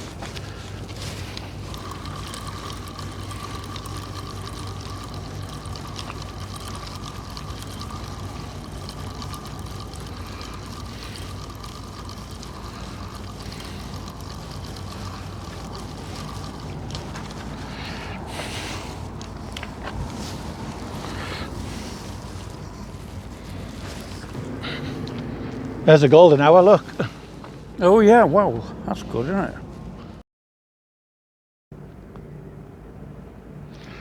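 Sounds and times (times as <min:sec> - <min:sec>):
low machinery hum: 0:00.0 - 0:30.2
outdoor background noise: 0:00.0 - 0:30.2, 0:31.8 - 0:34.0
thin high whine: 0:01.2 - 0:28.0.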